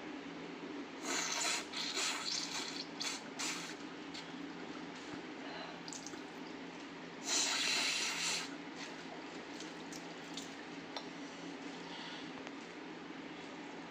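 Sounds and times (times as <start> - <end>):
steady low hum: 0.0 - 13.9
person blowing nose: 1.0 - 3.8, 7.2 - 8.5.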